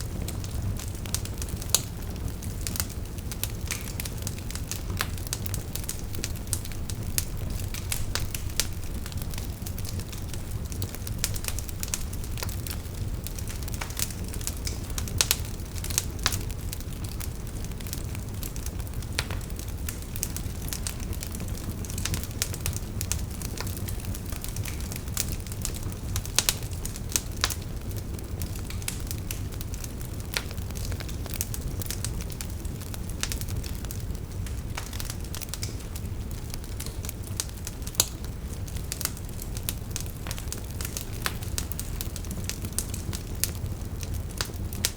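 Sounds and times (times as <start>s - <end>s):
bonfire crackling and popping: 0.0s - 44.9s
steady low rumble: 4.9s - 13.3s.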